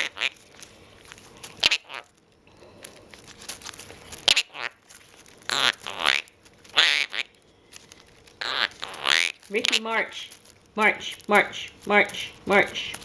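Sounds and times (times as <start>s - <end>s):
parrot calling: 0.0s - 0.4s, 1.5s - 2.1s, 4.2s - 4.8s, 5.4s - 7.4s, 8.4s - 13.0s.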